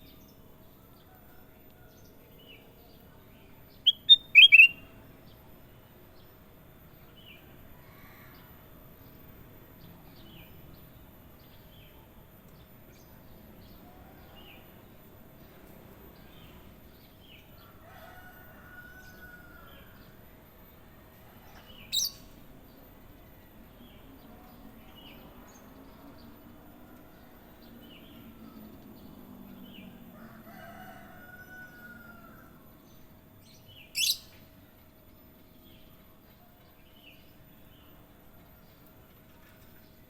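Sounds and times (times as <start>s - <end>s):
bird chirps and whistles: 3.9s - 4.8s
sharp short bird notes: 3.9s - 4.8s.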